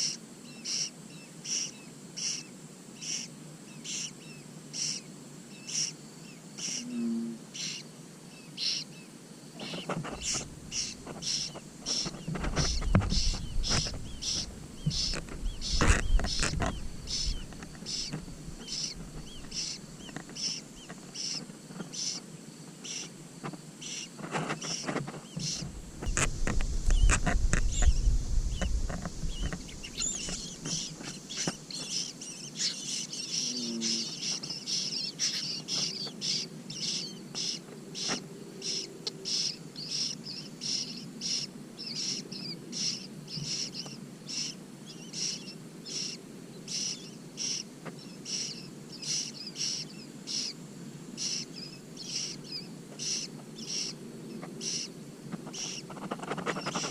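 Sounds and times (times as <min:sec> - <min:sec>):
low rumbles: 0:12.1 - 0:20.2, 0:25.4 - 0:31.2
cuckoo chick begging chirps: 0:29.3 - 0:34.3.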